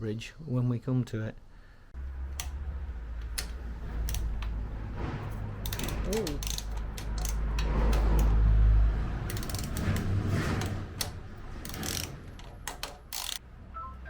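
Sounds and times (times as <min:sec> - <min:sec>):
hand tool metal clicks and scrapes: 0:03.2 - 0:08.4, 0:09.2 - 0:13.4.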